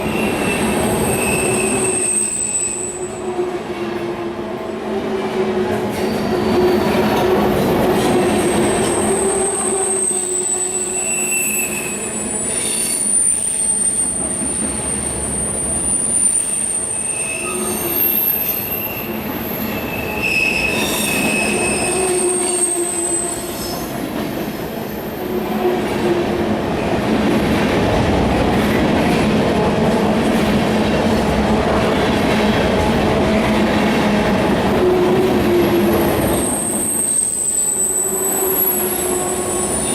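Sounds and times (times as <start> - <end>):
train wheels squealing: 0.0 - 3.2, 5.9 - 24.0, 35.6 - 39.9
freight train rumbling past: 0.0 - 39.9.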